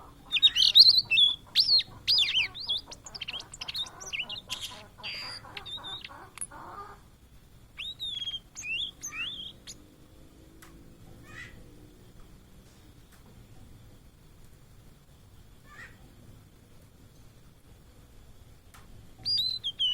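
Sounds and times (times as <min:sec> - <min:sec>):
bird singing whistled notes: 0:00.3 - 0:06.5, 0:07.8 - 0:09.8, 0:19.2 - 0:19.9.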